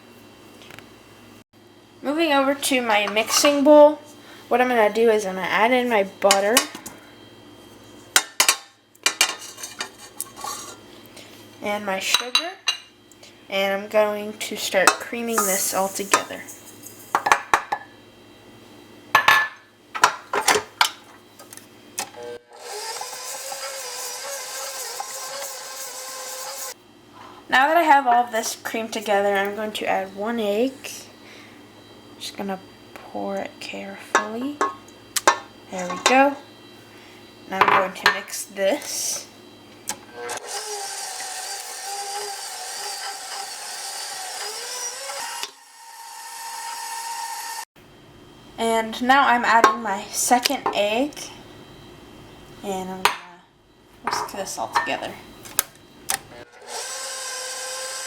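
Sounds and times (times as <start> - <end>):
electric mixer running: 22.0 - 26.8, 40.0 - 47.7, 56.4 - 58.0.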